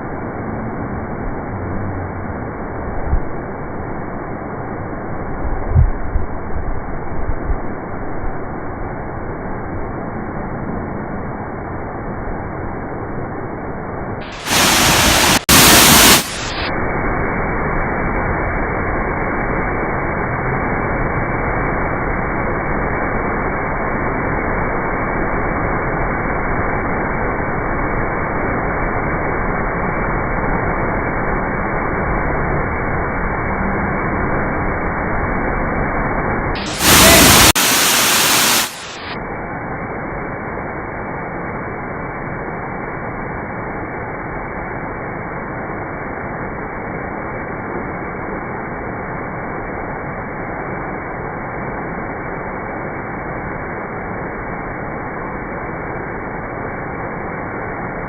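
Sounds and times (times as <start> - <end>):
waterfall rushing: 14.2 - 44.4
short loud hissing bursts: 14.3 - 16.7, 36.6 - 39.2.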